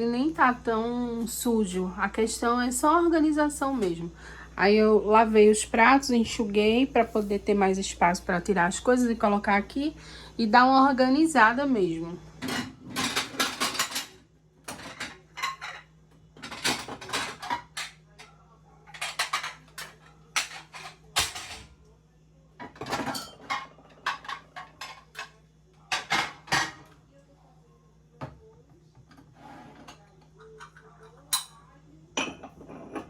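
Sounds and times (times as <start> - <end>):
faint steady hum: 0.0 - 33.0
dishes and cutlery clattering: 12.4 - 21.8, 22.6 - 27.0, 29.0 - 33.0.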